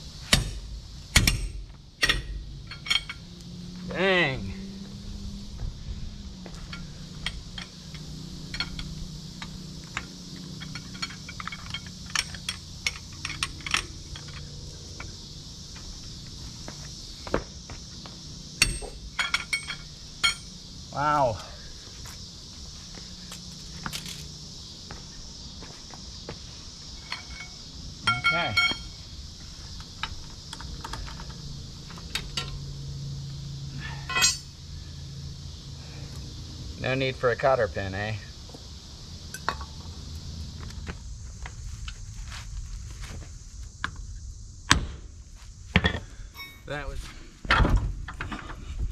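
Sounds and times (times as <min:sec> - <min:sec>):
metal parts clinking: 0:02.0 - 0:03.2, 0:06.7 - 0:14.6, 0:18.6 - 0:20.5, 0:27.0 - 0:29.0, 0:34.0 - 0:34.5.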